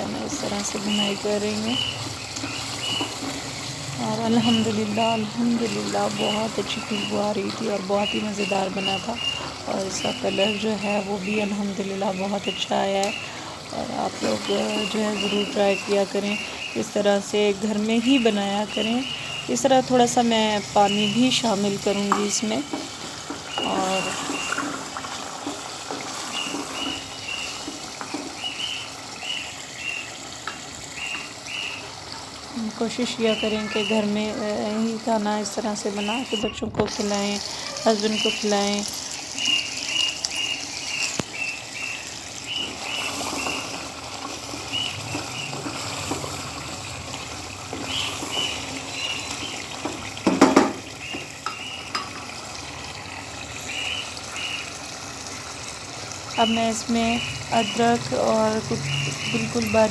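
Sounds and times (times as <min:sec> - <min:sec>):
food sizzling in a pan: 0:00.0 - 0:59.9
utensil clattering on pan: 0:49.8 - 0:52.4.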